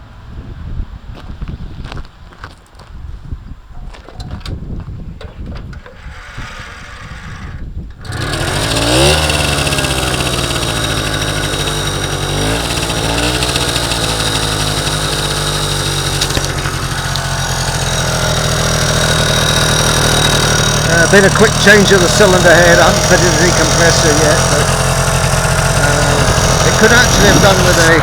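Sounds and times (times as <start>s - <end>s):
moped engine revving: 6.0s - 28.0s.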